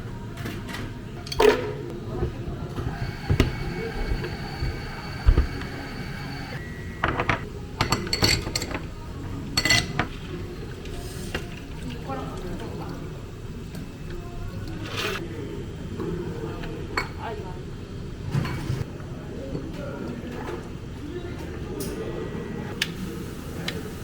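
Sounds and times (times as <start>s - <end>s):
steady low hum: 1.9s - 7.6s
cups and dishes clinking: 2.9s - 8.8s, 9.6s - 10.1s.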